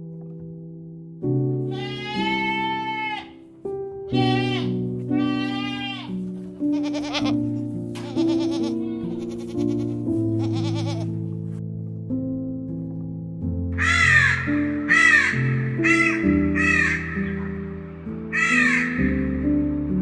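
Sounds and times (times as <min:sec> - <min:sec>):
background keyboard music: 0:00.0 - 0:20.0
animal bleating: 0:01.7 - 0:03.5, 0:04.1 - 0:11.2.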